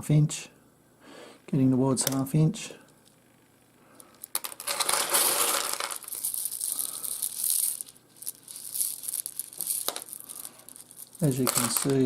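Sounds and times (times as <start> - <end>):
stones clinking and clattering: 4.2 - 12.0.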